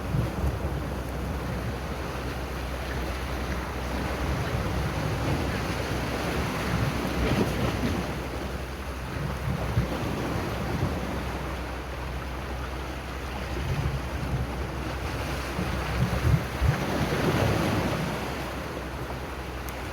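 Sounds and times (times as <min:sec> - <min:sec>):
wind buffeting microphone: 0:00.0 - 0:01.9, 0:15.4 - 0:18.5
sea waves washing in: 0:00.0 - 0:19.9.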